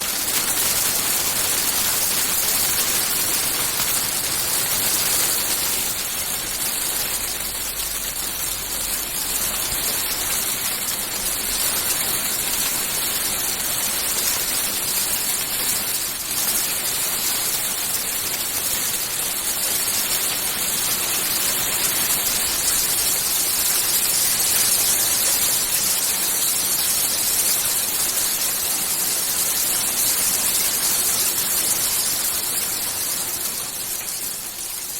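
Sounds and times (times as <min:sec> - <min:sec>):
hail and rain pelting: 0:00.0 - 0:34.9.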